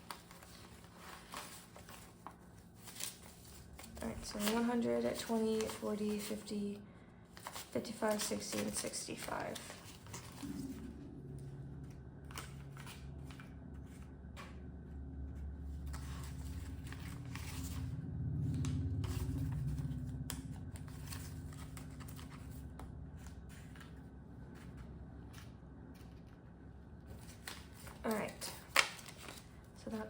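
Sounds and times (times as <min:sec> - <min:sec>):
banknotes rustling and snapping: 0:00.0 - 0:06.8, 0:07.4 - 0:10.7, 0:18.6 - 0:26.5, 0:27.1 - 0:30.0
low steady rumble: 0:00.0 - 0:30.0.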